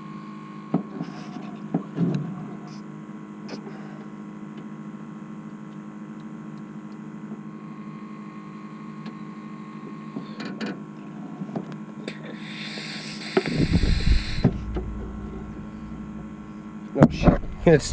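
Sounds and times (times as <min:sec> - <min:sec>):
electrical hum: 0:00.0 - 0:17.9
sharp knocks and bumps: 0:13.5 - 0:17.6.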